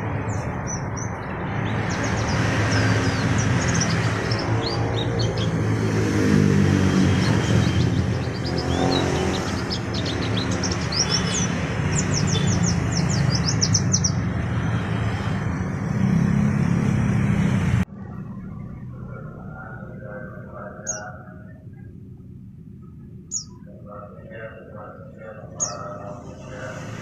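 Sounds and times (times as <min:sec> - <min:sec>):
birds chirping high calls: 0:00.0 - 0:05.9, 0:07.0 - 0:14.4, 0:18.6 - 0:26.8.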